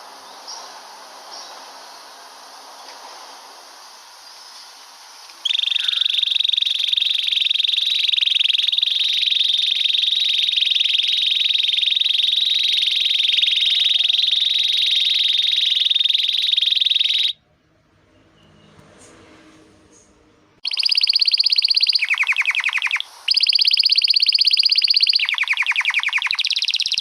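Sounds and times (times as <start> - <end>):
canary trilling: 5.4 - 17.4, 20.6 - 27.0.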